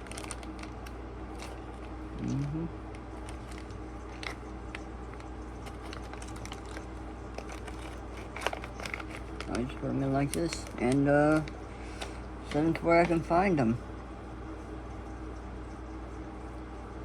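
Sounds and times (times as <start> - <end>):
knobs and packaging clicking: 0.0 - 13.2
low electrical hum: 0.0 - 17.0.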